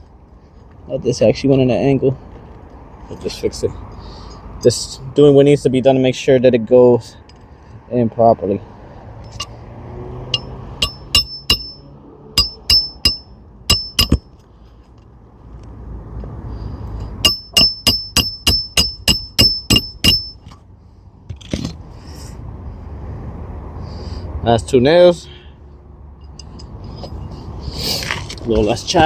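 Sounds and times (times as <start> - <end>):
hammer striking roofing nails: 17.3 - 20.4.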